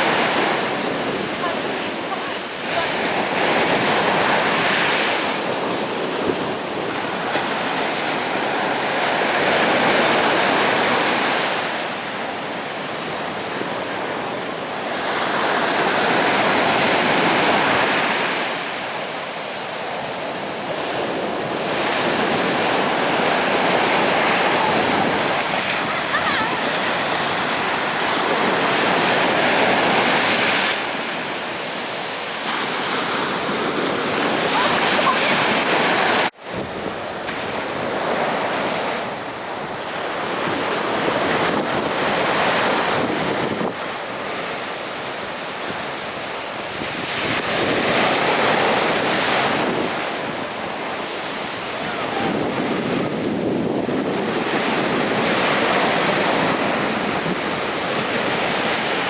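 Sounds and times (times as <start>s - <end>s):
surf breaking on beach: 0.0s - 59.0s
wind buffeting microphone: 20.4s - 31.0s, 46.6s - 59.0s.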